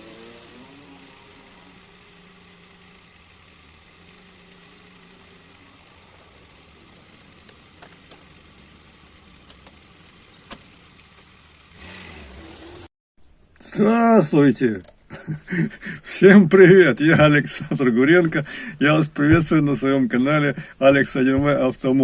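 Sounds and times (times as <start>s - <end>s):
vehicle engine idling: 0.8s - 12.8s.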